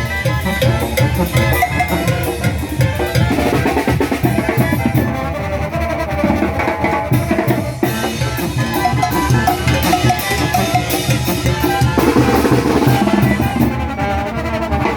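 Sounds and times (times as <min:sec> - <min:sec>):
drums keeping a steady beat: 0:00.0 - 0:14.9
wind section held notes: 0:00.0 - 0:14.9.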